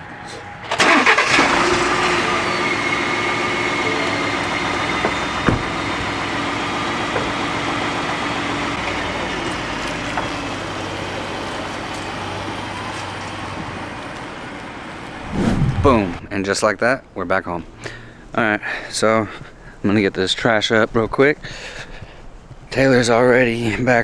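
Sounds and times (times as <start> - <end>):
truck engine running: 0.7 - 15.2.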